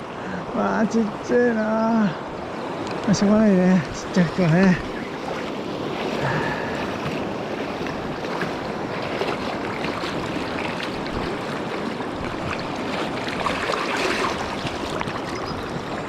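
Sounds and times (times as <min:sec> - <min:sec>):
river rushing over rocks: 0:09.3 - 0:16.0.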